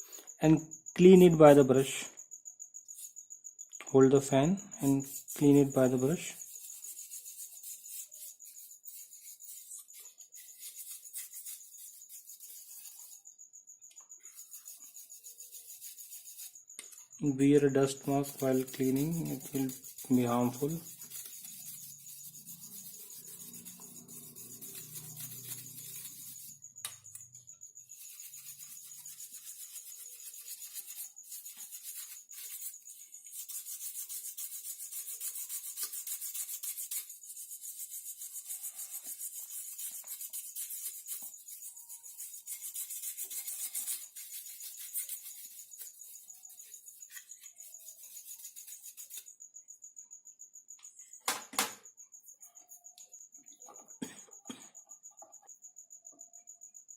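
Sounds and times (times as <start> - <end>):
brush scrubbing dust: 4.8 - 13.2, 14.3 - 16.7, 17.3 - 27.1, 27.8 - 49.3.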